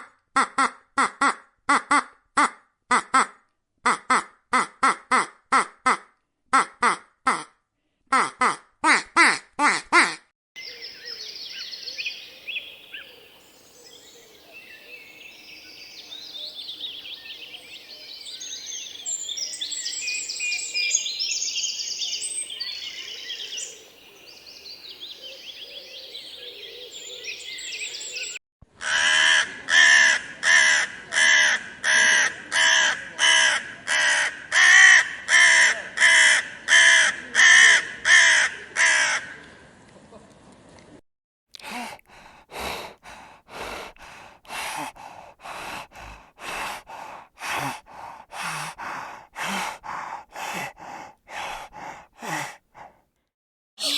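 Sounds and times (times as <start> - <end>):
birds chirping and twittering: 10.6 - 28.4.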